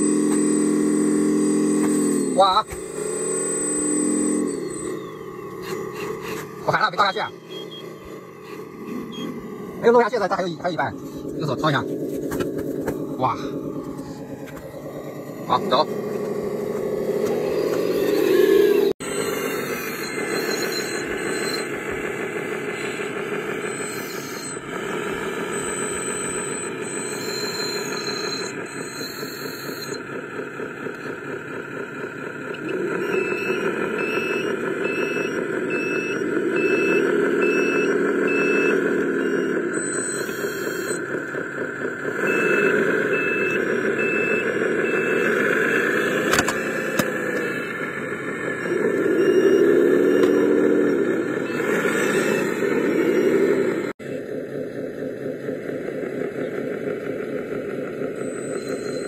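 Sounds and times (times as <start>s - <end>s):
short beeps: 0.0s - 11.8s, 16.9s - 21.8s, 22.8s - 30.0s, 33.0s - 41.1s, 42.2s - 47.8s, 48.6s - 53.6s, 58.2s - 59.0s
mechanical running noise: 0.0s - 59.0s
pitched motor whine: 0.0s - 59.0s.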